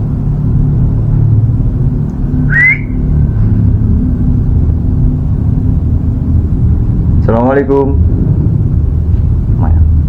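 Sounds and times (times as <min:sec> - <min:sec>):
low rumble: 0:00.0 - 0:10.0
short rising squeak: 0:02.4 - 0:03.5.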